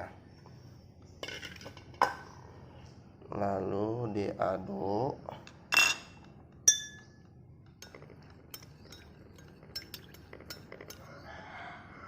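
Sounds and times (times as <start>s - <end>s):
spoon clinking in a glass: 5.8s - 11.1s.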